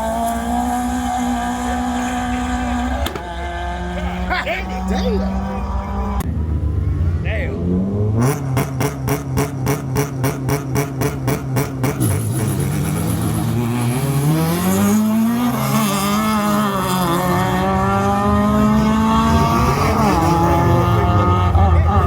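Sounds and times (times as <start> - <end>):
race car engine accelerating: 0.0 - 22.0
sharp engine cracks: 3.0 - 3.4.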